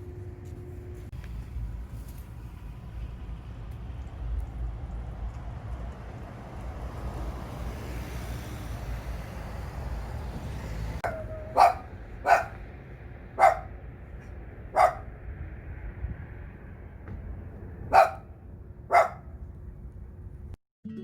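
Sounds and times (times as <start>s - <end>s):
steady low rumble: 0.0s - 7.1s, 11.0s - 20.6s
dog barking: 11.0s - 12.6s, 13.3s - 13.8s, 14.7s - 15.1s, 17.9s - 18.3s, 18.9s - 19.4s
dog whining: 11.0s - 12.6s.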